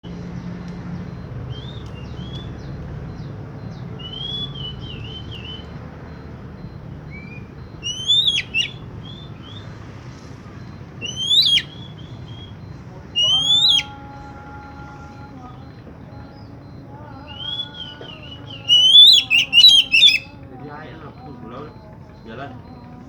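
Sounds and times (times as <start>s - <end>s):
steady low hum: 0.8s - 23.0s
bird singing whistled notes: 1.1s - 20.4s.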